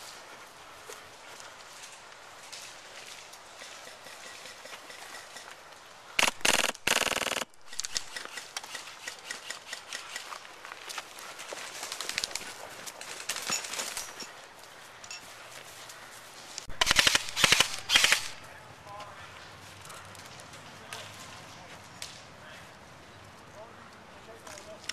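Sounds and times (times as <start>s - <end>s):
airsoft gun full-auto bursts: 6.2s - 10.2s, 16.7s - 18.4s.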